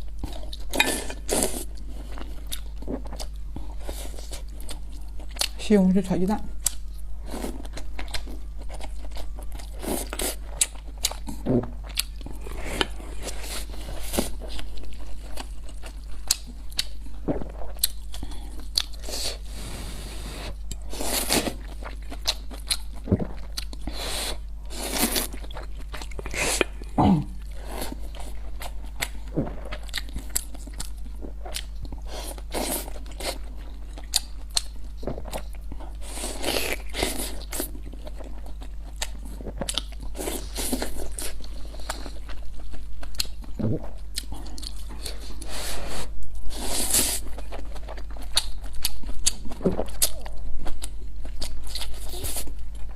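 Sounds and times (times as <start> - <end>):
constant low hum: 0.0 - 52.9
person chewing and biting: 6.6 - 19.4, 20.5 - 45.6, 46.4 - 52.9.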